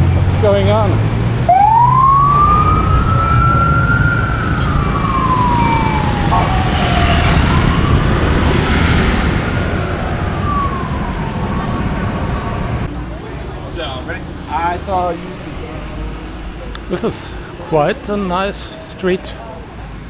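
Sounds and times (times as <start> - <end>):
street traffic rumble: 0.0 - 20.0
siren wailing: 1.4 - 12.9.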